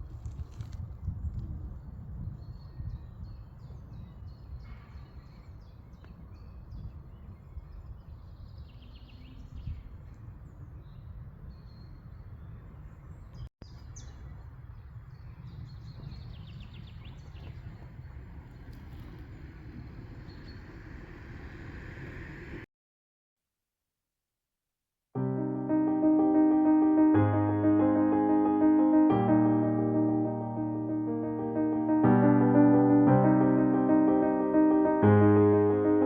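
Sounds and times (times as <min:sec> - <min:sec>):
small birds chirping: 0:01.1 - 0:22.2
low outdoor rumble: 0:17.8 - 0:22.7.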